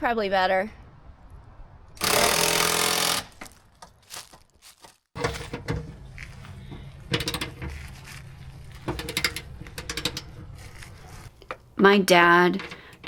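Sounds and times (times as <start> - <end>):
rapid ratchet clicks: 2.0 - 3.3
hand tools clinking on metal: 7.1 - 7.8, 8.8 - 10.4.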